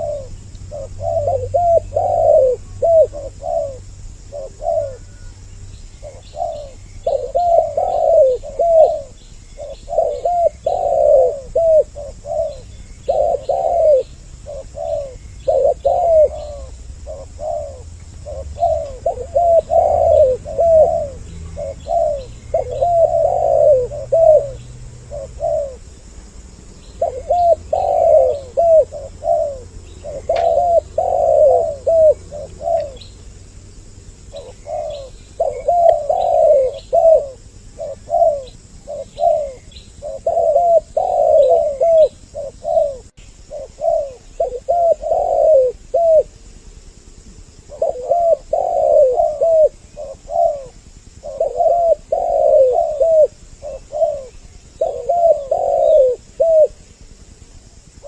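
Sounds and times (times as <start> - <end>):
faint small bird chirps: 0.0 - 25.8, 26.8 - 33.2
doves cooing: 0.0 - 46.5, 47.5 - 58.0.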